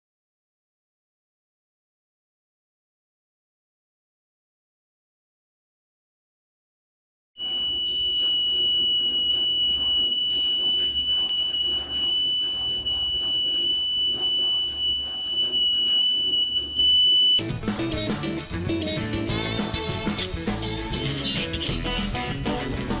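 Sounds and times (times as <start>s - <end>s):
high-pitched alarm buzzer: 7.4s - 17.4s
guitar music: 17.4s - 23.0s.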